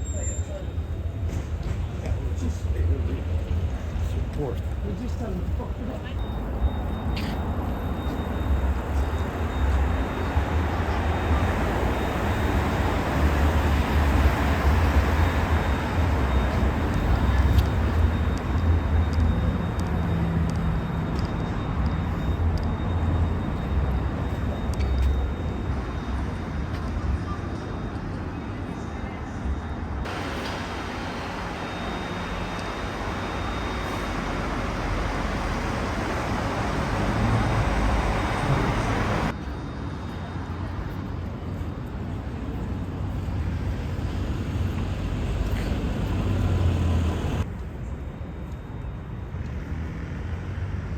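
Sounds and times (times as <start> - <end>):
city traffic rumble and hiss: 0.0 - 50.9.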